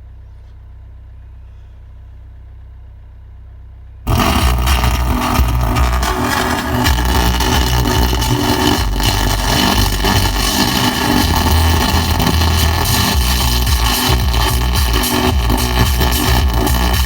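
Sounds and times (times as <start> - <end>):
film soundtrack through car speakers: 4.0 - 17.0
loud hiss: 4.1 - 17.0
pulsing low rumble: 4.1 - 17.0.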